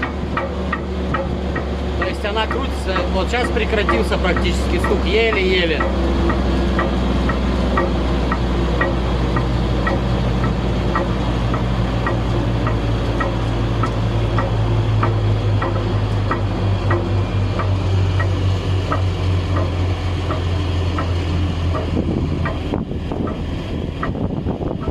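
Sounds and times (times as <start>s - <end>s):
cone crusher low drone: 0.0s - 24.9s
wind noise: 21.8s - 24.9s.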